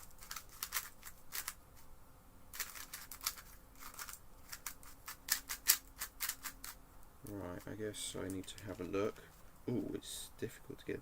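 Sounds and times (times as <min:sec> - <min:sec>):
puzzle cube clicking plastic: 0:00.1 - 0:01.6, 0:02.6 - 0:06.8.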